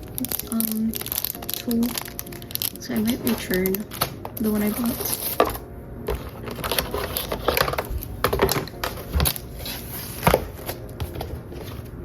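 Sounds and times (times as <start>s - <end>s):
plastic packaging rustling and crinkling: 0.0s - 12.0s
box knocks and clicks: 3.3s - 9.4s.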